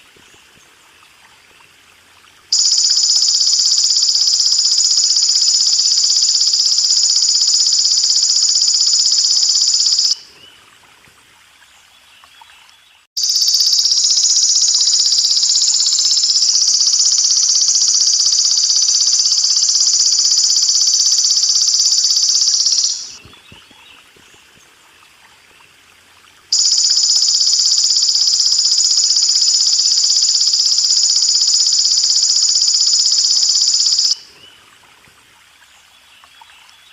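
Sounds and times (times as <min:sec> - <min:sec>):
faint water trickle: 0:00.0 - 0:31.5, 0:34.2 - 0:36.9
grasshopper buzzing trills: 0:02.5 - 0:10.2, 0:13.2 - 0:23.2, 0:26.5 - 0:34.2.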